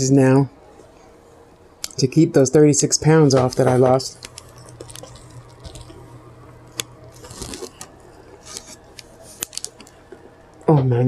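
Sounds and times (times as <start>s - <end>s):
quiet chewing: 4.2s - 10.7s.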